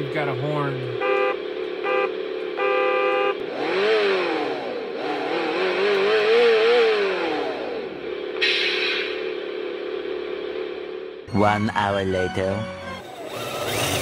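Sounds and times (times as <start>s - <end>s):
synthesized engine idle hum: 0.0s - 14.0s
synthesized engine revving: 0.0s - 14.0s
synthesized vehicle horn toots: 0.6s - 4.5s.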